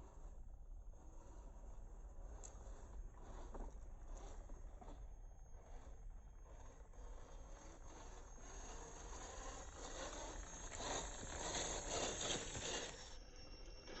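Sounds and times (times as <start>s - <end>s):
toy car tyres crunching on rock: 5.6s - 13.2s.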